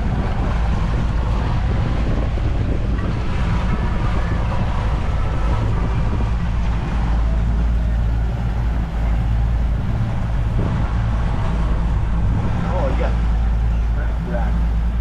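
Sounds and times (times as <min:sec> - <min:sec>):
boat engine drone: 0:00.0 - 0:15.0
rush of wind and water: 0:00.0 - 0:15.0.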